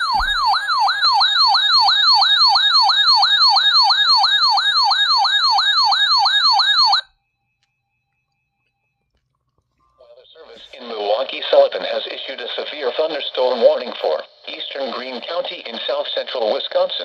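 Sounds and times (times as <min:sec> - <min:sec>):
electronic siren yelp: 0:00.0 - 0:07.1.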